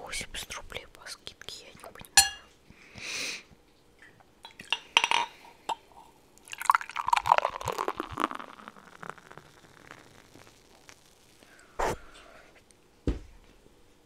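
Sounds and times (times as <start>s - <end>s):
glass clinking: 2.2s - 2.5s, 4.6s - 5.4s
liquid gulping sounds: 6.4s - 12.0s.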